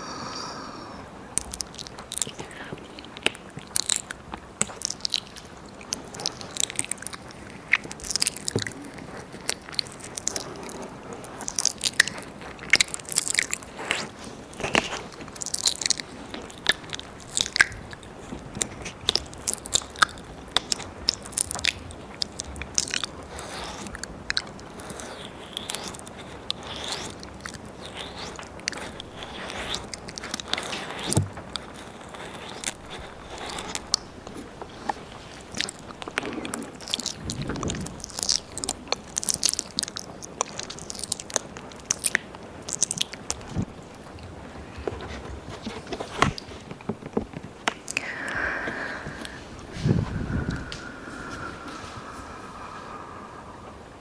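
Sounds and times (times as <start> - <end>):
wet mouth licks and smacks: 1.3 - 44.1.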